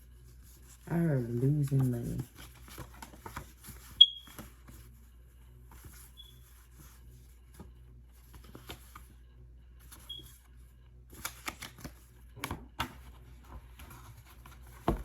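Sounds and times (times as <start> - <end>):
cards handled on a table: 0.2 - 5.0, 5.6 - 9.2, 11.1 - 15.0.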